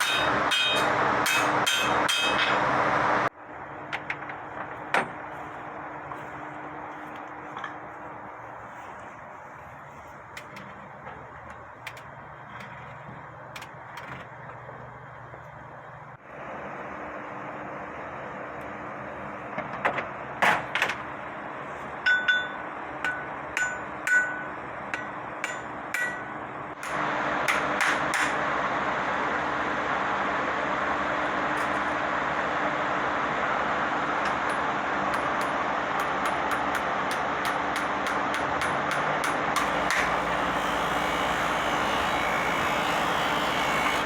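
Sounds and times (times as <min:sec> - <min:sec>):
hammer striking steel: 0:00.0 - 0:02.7, 0:22.0 - 0:28.4, 0:34.2 - 0:41.2.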